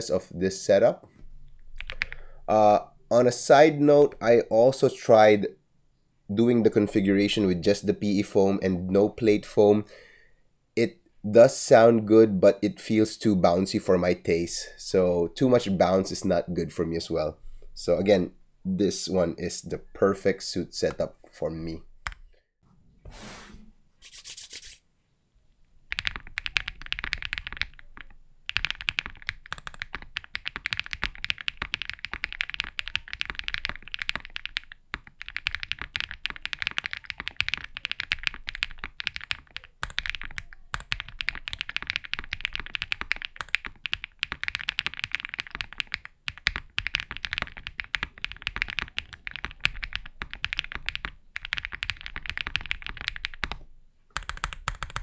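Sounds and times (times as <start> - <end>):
mechanical keyboard typing: 1.8 - 2.2, 25.9 - 55.0.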